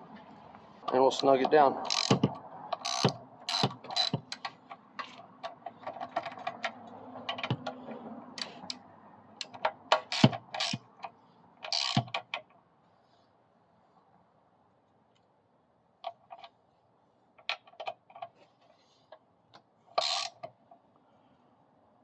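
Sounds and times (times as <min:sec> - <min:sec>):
ratchet wrench clicking: 0:01.8 - 0:04.5, 0:09.4 - 0:10.9, 0:11.7 - 0:12.3, 0:20.0 - 0:20.5.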